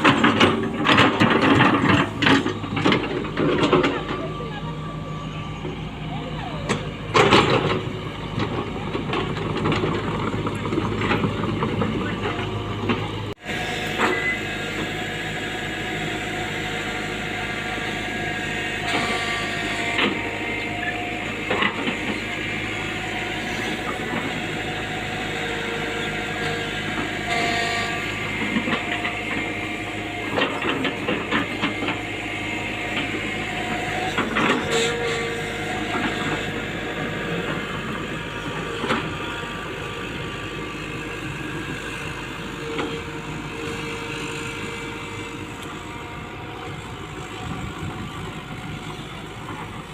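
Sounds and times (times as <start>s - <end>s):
diesel engine running: 0.0s - 49.9s
metallic clanks and scrapes: 34.0s - 36.4s.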